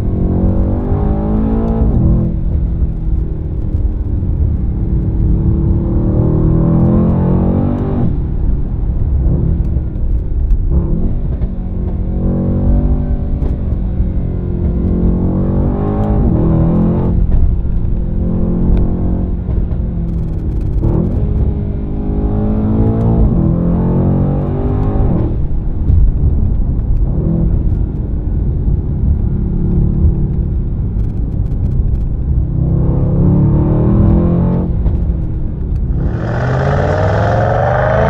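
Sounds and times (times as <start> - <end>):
car engine revving: 0.0 - 28.2, 29.4 - 38.0.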